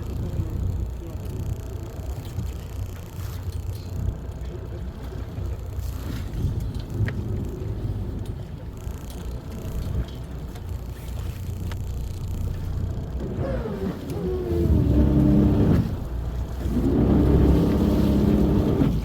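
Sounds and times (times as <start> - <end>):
boat engine rumbling: 0.0 - 19.0
faint ticks: 1.2 - 5.8, 6.6 - 13.2.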